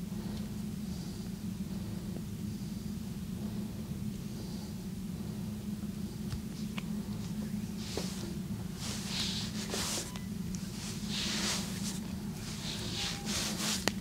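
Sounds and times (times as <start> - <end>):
steady low hum: 0.0 - 14.0
hands rubbing skin swishing: 7.3 - 14.0.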